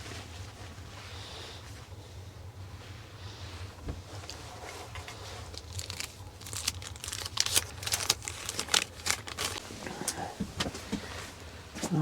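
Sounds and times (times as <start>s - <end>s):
steady low hum: 0.0s - 12.0s
crinkling and crackling: 3.9s - 12.0s.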